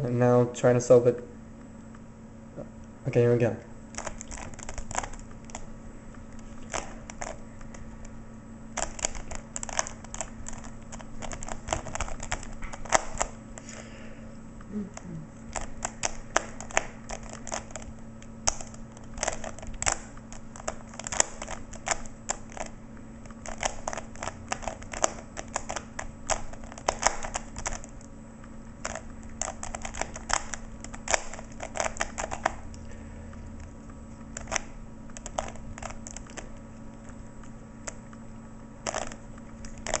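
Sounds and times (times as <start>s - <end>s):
faint steady hum: 0.0s - 40.0s
puzzle cube plastic clicks: 6.4s - 7.8s, 8.7s - 13.4s, 15.5s - 28.1s, 28.8s - 32.8s, 34.3s - 38.0s, 38.8s - 40.0s.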